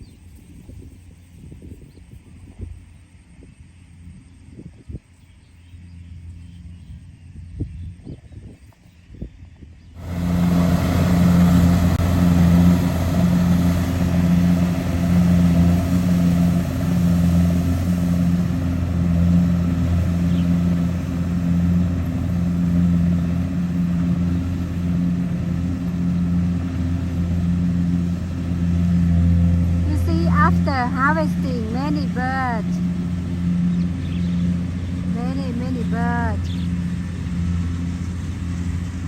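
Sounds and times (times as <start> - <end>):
diesel engine throbbing: 10.0 - 39.0.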